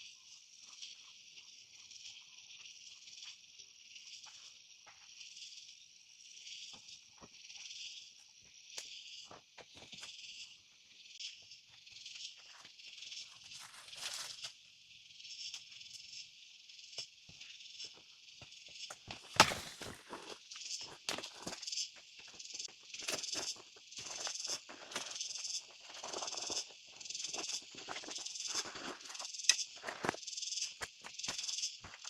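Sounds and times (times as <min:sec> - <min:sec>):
insect chorus buzzing: 0:00.0 - 0:32.0
rustle: 0:13.4 - 0:14.6, 0:19.1 - 0:20.4.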